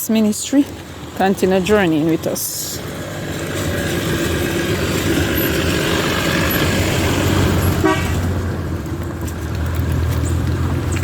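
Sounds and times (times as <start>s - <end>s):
vehicle passing on wet road: 0.6s - 11.0s
horn toot: 7.6s - 8.3s.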